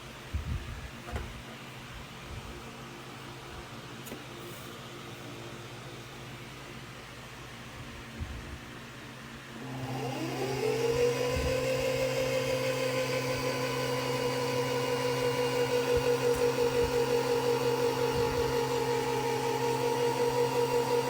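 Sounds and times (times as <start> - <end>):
sewing machine motor whining: 9.6 - 21.0.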